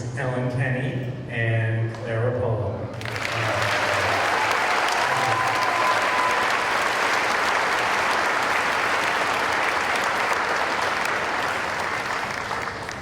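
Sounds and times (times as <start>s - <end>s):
audience applauding: 3.0s - 13.0s.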